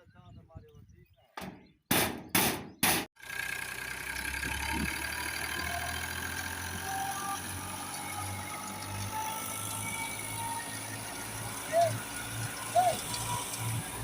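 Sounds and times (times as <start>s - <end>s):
tractor diesel engine idling: 3.2s - 14.0s.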